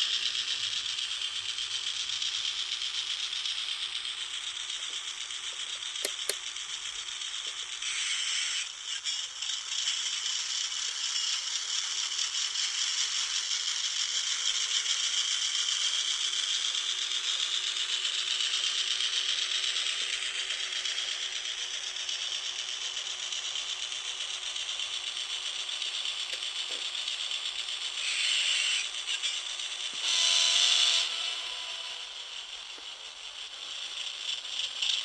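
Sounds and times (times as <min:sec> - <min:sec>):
model locomotive gears rattling: 0:00.0 - 0:35.0
sharp clicks: 0:03.5 - 0:07.6, 0:26.1 - 0:26.9.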